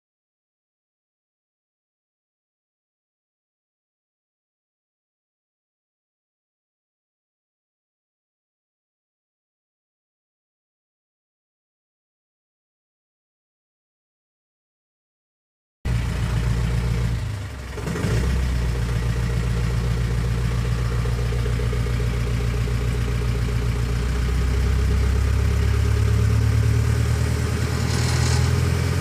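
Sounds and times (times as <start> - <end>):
generator engine running: 15.9 - 29.0
short hiss: 27.7 - 28.8.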